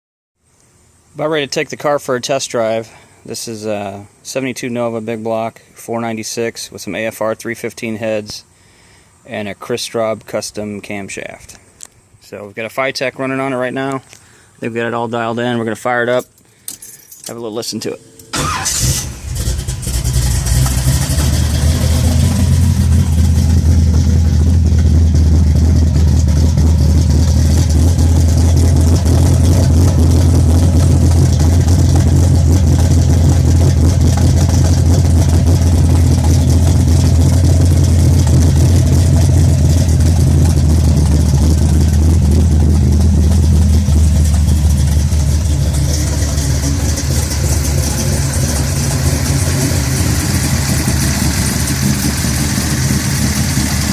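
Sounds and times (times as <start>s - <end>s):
car engine idling: 17.8s - 53.9s.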